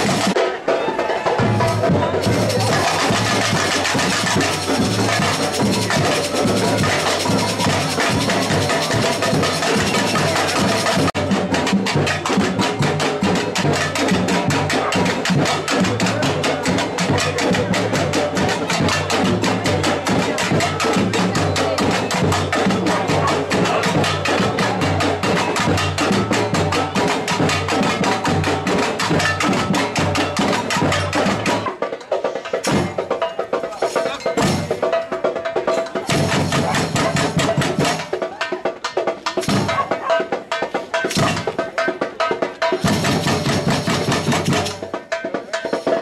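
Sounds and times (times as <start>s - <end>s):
deep drums: 0.0s - 31.7s
samba percussion band playing: 0.0s - 46.0s.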